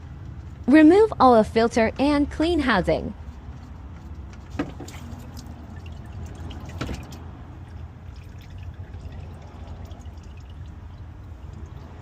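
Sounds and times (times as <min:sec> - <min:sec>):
oil pouring and dripping: 0:04.0 - 0:12.0.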